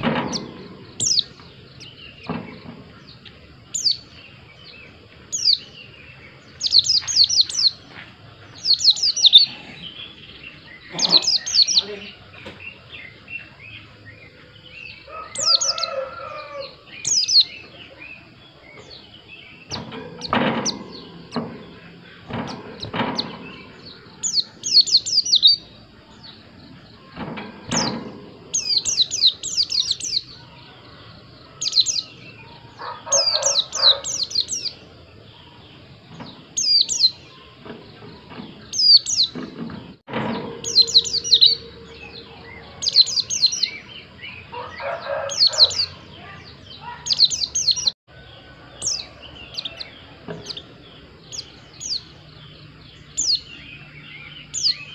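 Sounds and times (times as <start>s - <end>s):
bird twittering: 0.0s - 7.9s, 8.6s - 25.8s, 27.0s - 30.5s, 31.6s - 34.8s, 40.6s - 48.0s
low rough bird call: 36.6s - 50.7s.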